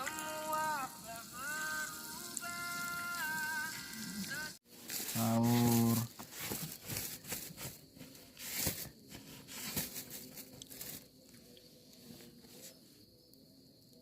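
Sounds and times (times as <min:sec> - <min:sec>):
plastic wrapping crinkling: 0:04.6 - 0:11.1.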